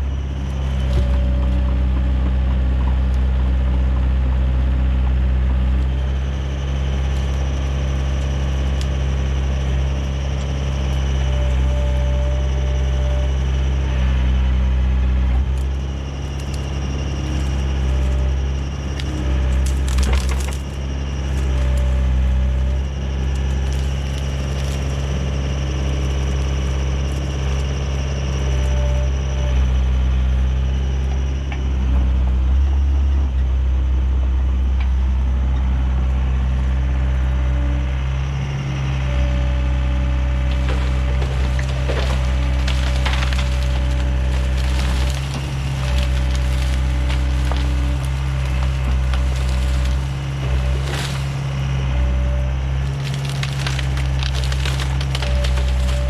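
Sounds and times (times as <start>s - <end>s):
excavator diesel engine: 0.0s - 56.0s
branches cracking: 15.4s - 27.9s, 40.4s - 56.0s.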